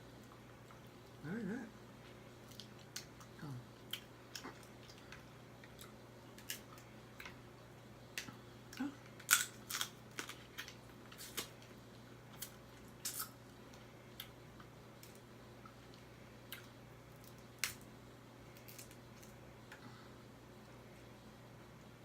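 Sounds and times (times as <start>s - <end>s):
soft chewing: 0.2s - 7.4s, 8.1s - 17.8s
crab shell cracking: 9.2s - 10.7s, 16.6s - 17.9s, 18.6s - 19.4s.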